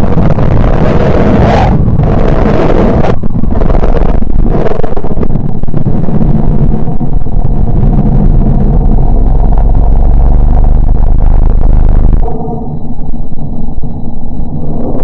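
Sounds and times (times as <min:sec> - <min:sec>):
deep rumbling drone: 0:00.0 - 0:15.0.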